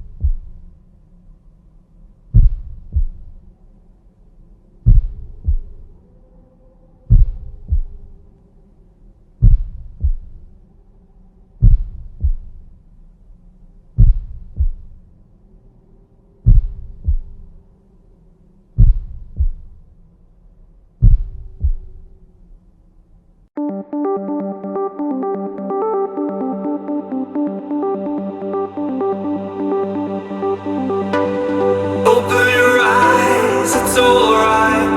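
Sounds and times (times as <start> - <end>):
heartbeat lub-dub: 0.0 - 0.6, 2.4 - 3.4, 4.9 - 5.9, 7.1 - 8.1, 9.4 - 10.4, 11.6 - 12.6, 14.0 - 15.0, 16.5 - 17.4, 18.8 - 19.8, 21.0 - 22.0, 23.8 - 34.9.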